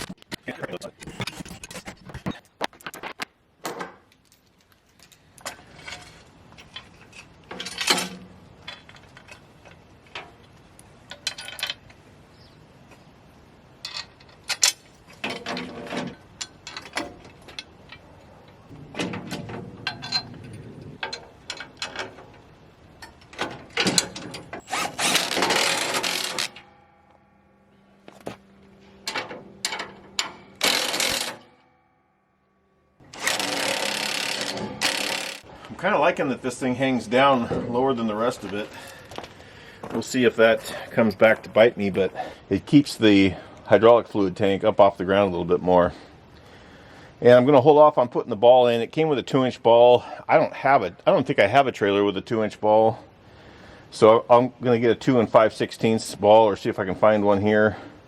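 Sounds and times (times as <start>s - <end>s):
metal parts clanking: 0.0s - 10.4s, 11.1s - 12.0s, 13.8s - 27.0s, 28.2s - 31.7s, 33.0s - 35.5s.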